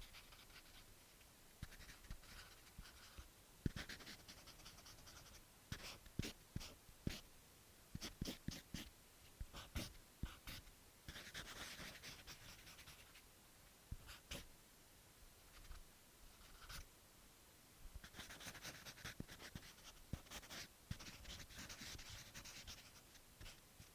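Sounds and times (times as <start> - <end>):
marker scratching on paper: 0.0 - 0.8, 1.6 - 7.2, 8.0 - 8.9, 9.5 - 13.2, 14.0 - 14.4, 16.4 - 16.8, 18.0 - 23.6.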